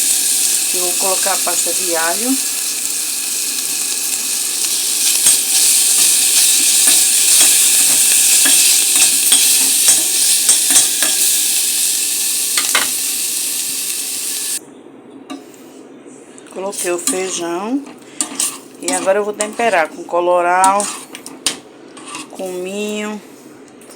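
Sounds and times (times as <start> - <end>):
food sizzling in a pan: 0.0 - 14.6
spoon stirring and clicking on pan: 4.6 - 11.3, 20.6 - 22.2.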